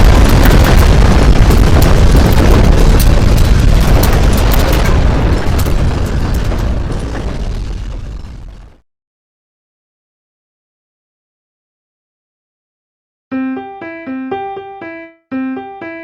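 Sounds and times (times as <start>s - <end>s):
sharp rattles and clicks: 0.0s - 8.2s
earthquake deep rumble: 0.0s - 8.8s.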